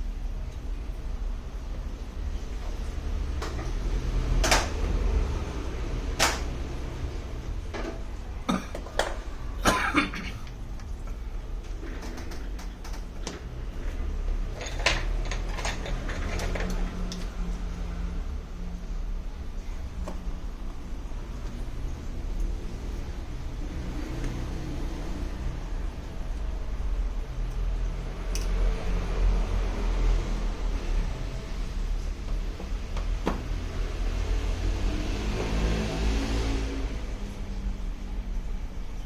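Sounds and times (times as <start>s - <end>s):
small tools clicking and knocking: 14.5s - 17.3s.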